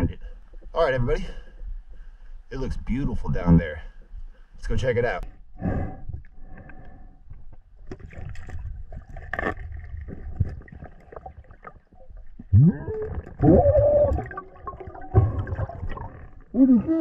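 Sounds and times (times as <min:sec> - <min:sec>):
muffled pitched underwater tones: 0:00.0 - 0:00.7, 0:12.0 - 0:17.0
water sloshing: 0:07.7 - 0:16.6.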